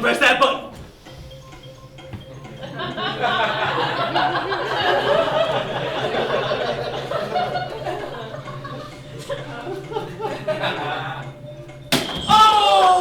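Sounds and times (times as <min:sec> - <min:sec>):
audience laughing: 0:02.2 - 0:11.9.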